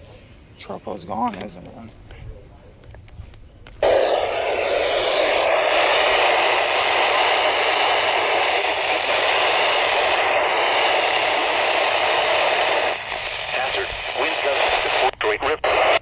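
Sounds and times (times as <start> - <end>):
radio static hiss: 3.7 - 16.0.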